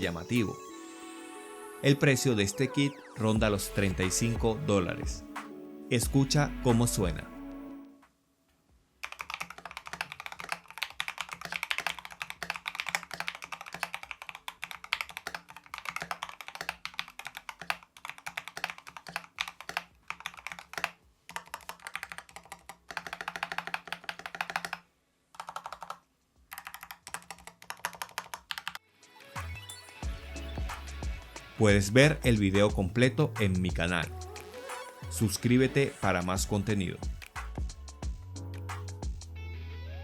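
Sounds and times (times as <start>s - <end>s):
mechanical keyboard typing: 9.0s - 24.8s, 25.4s - 28.8s.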